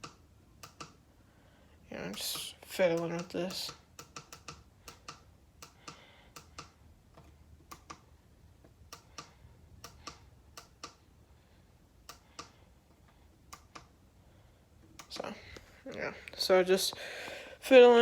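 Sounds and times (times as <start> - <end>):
small buttons clicking: 0.0 - 1.0, 2.0 - 8.1, 8.7 - 11.1, 12.0 - 14.0, 14.9 - 15.4.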